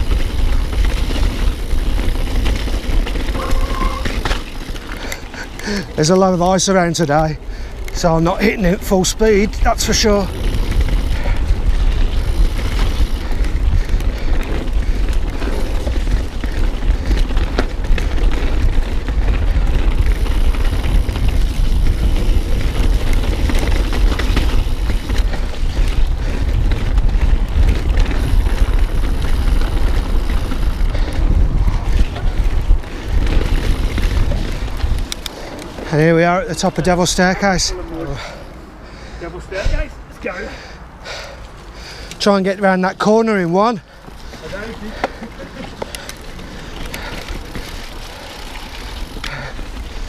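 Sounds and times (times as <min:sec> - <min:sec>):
bike knocks and rattles: 0:00.0 - 0:05.8, 0:09.8 - 0:35.9
wind rumbling on microphone: 0:00.0 - 0:38.8, 0:43.9 - 0:50.0
bike tyre noise: 0:00.0 - 0:50.0.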